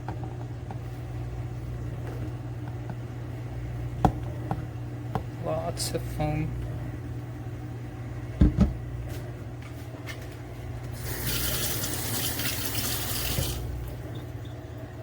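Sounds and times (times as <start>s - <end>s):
steady low hum: 0.0s - 15.0s
liquid pouring: 11.0s - 15.0s.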